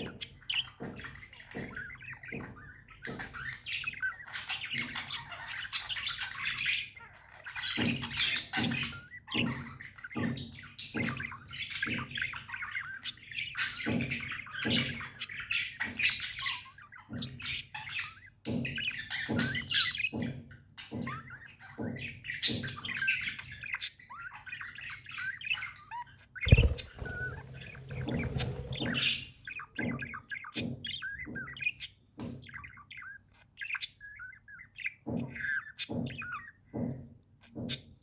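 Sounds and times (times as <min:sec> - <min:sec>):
budgerigars chattering and warbling: 0:00.0 - 0:36.9
loud thump: 0:26.5 - 0:28.9.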